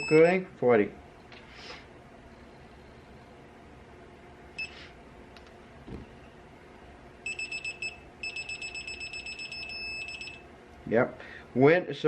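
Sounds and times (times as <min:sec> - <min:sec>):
torque wrench beeping: 0:00.0 - 0:00.3, 0:07.3 - 0:10.4.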